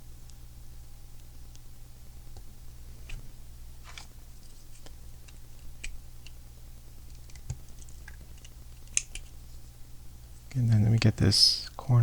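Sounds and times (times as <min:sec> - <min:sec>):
steady low hum: 0:00.0 - 0:12.0
plastic pieces clicking: 0:07.2 - 0:09.3.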